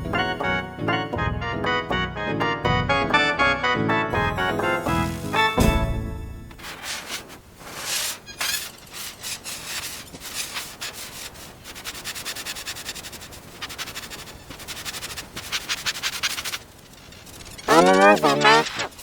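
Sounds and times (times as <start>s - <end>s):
quick scraping strokes: 6.6s - 19.0s.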